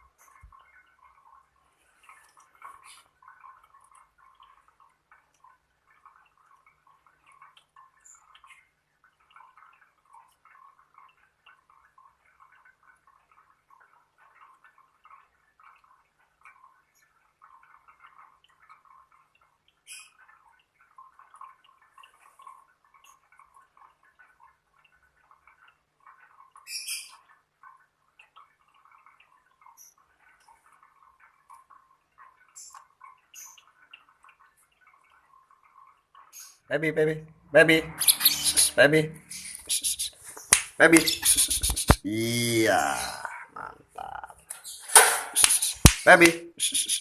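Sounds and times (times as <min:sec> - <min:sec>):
lovebirds chirping: 0:37.9 - 0:42.0.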